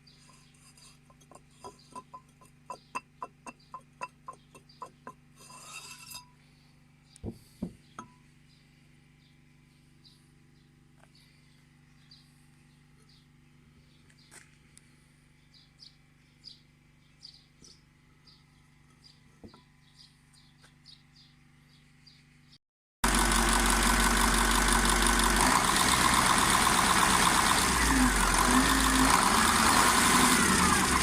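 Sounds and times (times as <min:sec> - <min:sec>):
diesel engine running loudly: 0:23.0 - 0:31.0.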